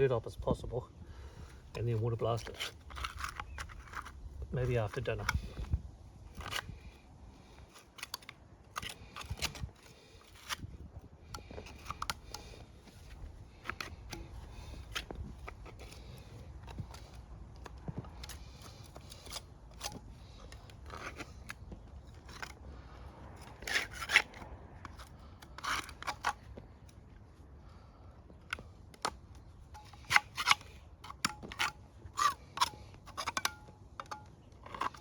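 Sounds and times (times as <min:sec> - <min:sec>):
scraper scraping grease off metal: 0:11.4 - 0:22.6.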